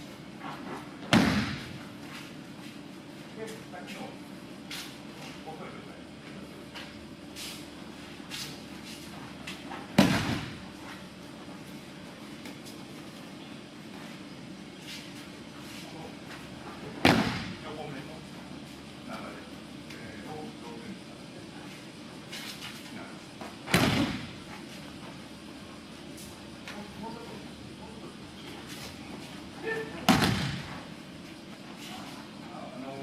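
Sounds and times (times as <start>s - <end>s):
body thudding on mat: 30.1s - 30.8s.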